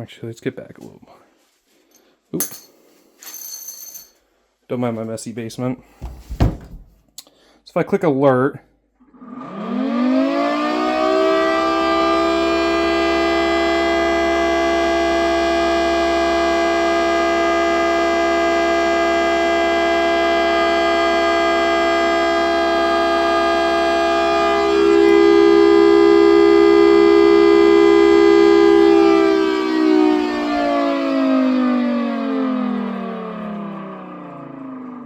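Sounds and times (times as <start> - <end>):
multi-tone siren wail: 9.1 - 35.0.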